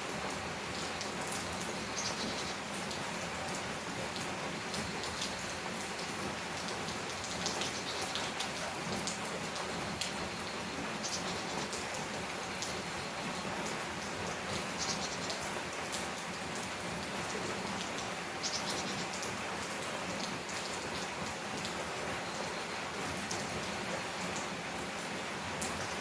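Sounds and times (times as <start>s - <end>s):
rain on a tin roof: 0.0s - 26.0s.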